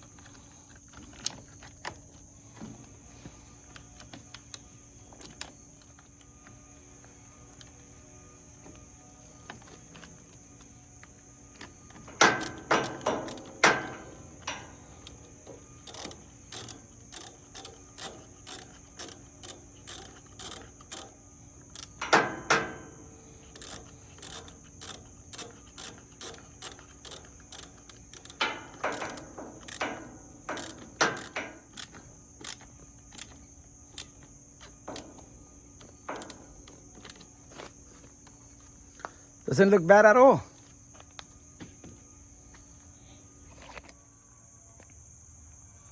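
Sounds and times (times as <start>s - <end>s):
cricket trill: 0.0s - 45.9s
socket ratchet clicking: 11.6s - 35.2s, 35.8s - 37.3s.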